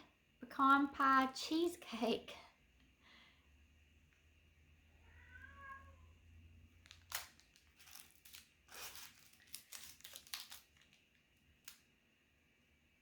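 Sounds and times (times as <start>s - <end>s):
cat meow: 4.9s - 6.2s
cellophane wrappers crinkling: 6.7s - 11.8s.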